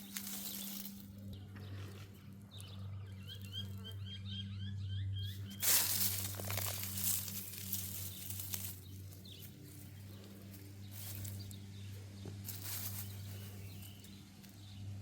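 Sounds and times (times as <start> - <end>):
digging scraping soil: 0.0 - 2.8, 5.4 - 14.2.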